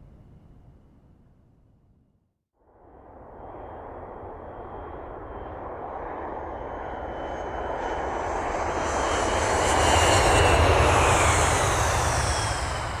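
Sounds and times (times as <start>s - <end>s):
jet airplane passing by: 2.9s - 13.0s.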